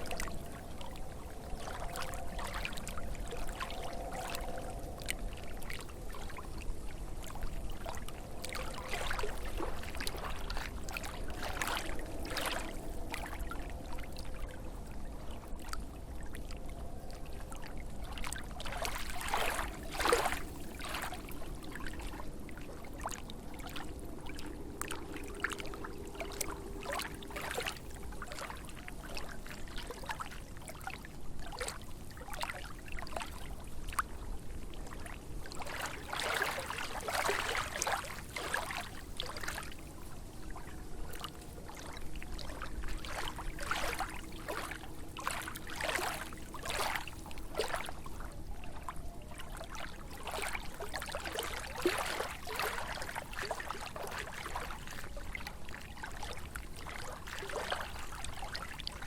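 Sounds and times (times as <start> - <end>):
lake water lapping: 0.0 - 59.0.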